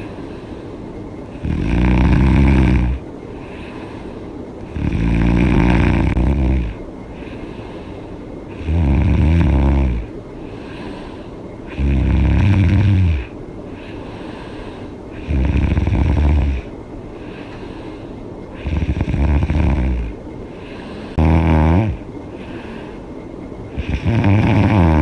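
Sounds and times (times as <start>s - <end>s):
woman snoring: 1.3s - 3.8s, 4.7s - 6.8s, 8.5s - 11.0s, 11.7s - 13.4s, 14.6s - 16.7s, 18.6s - 20.2s, 20.8s - 23.0s, 23.8s - 25.0s.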